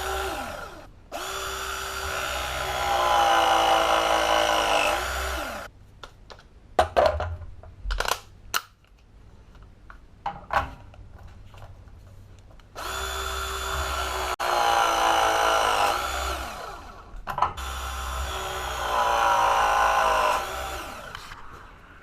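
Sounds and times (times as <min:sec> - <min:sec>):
power tool motor winding down: 0:00.0 - 0:05.7, 0:12.8 - 0:17.0, 0:17.6 - 0:21.2.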